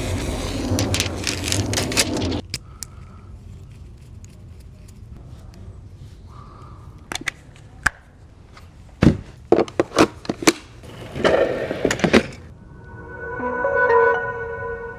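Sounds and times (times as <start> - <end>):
music with held tones: 12.6 - 14.9.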